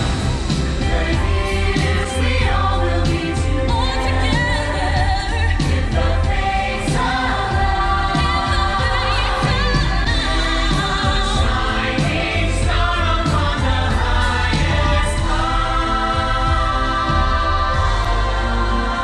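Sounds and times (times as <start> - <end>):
choir singing over loudspeakers: 0.0 - 19.0.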